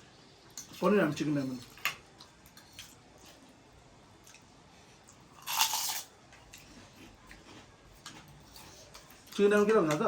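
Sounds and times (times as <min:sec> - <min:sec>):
person eating noodles: 0:04.2 - 0:09.4.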